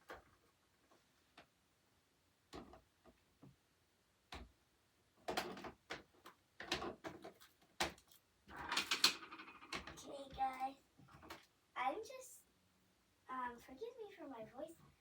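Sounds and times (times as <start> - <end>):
clattering and rustling: 5.2 - 11.5
small objects clicking and knocking: 5.2 - 11.5.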